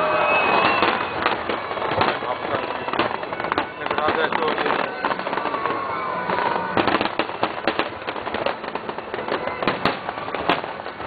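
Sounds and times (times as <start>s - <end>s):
whistling firework shell: 0.0s - 7.9s
fireworks bangs: 0.0s - 11.0s
fireworks crackling: 0.0s - 11.0s.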